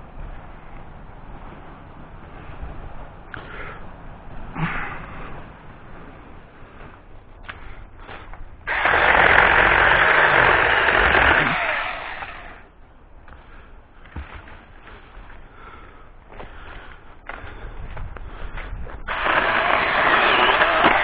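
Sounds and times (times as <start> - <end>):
electric chainsaw cutting branch: 8.7 - 12.7, 19.1 - 21.0.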